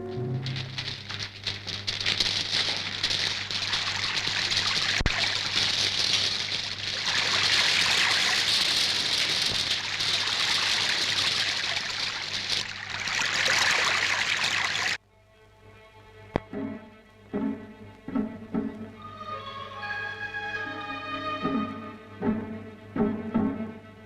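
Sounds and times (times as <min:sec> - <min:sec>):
low steady hum: 0:00.0 - 0:14.1
rushing splashing water: 0:00.0 - 0:15.0.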